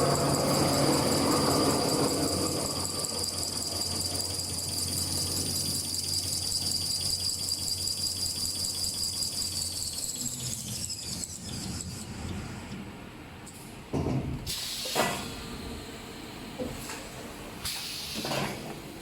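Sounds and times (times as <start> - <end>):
machine high whine: 0.0 - 12.6.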